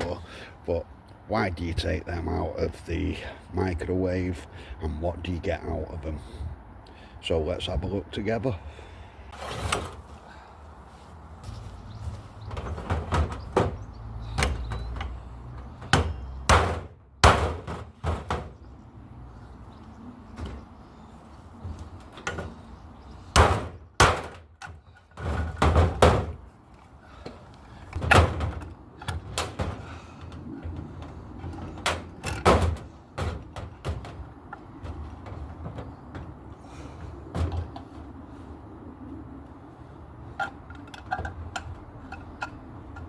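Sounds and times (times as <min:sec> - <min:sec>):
metal clunks and slams: 0:11.4 - 0:18.8, 0:20.2 - 0:21.0, 0:21.6 - 0:26.6, 0:27.2 - 0:38.2.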